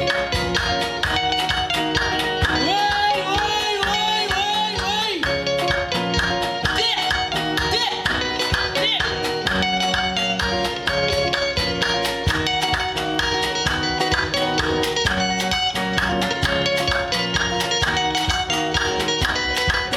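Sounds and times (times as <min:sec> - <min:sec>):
band music with guitar: 0:00.0 - 0:19.9
steady drum beat: 0:08.2 - 0:19.9.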